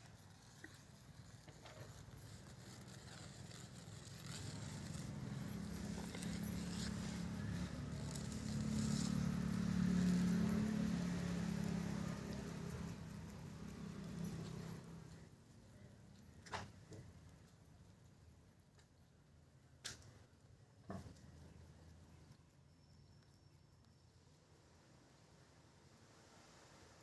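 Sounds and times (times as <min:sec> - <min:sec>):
vehicle passing by: 0:02.2 - 0:15.4.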